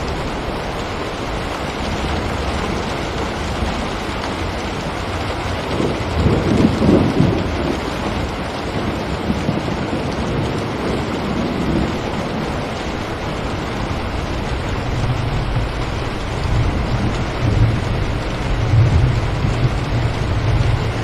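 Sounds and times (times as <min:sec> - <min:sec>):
rain on a window: 0:00.0 - 0:21.0
low rumble: 0:11.6 - 0:21.0.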